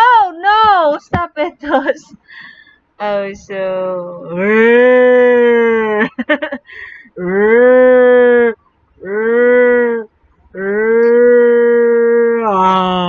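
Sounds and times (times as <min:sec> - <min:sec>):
moo-like moaning calls: 0:07.2 - 0:12.6.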